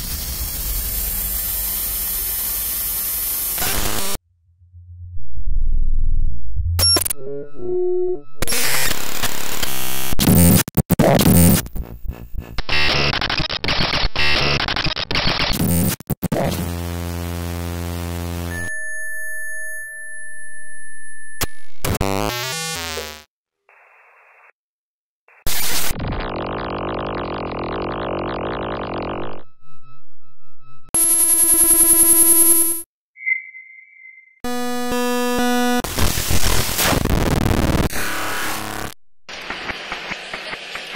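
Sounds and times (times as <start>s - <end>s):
harsh electronic static: 0.0s - 4.2s, 8.4s - 18.5s, 34.5s - 40.9s
short high beep: 33.2s - 34.4s.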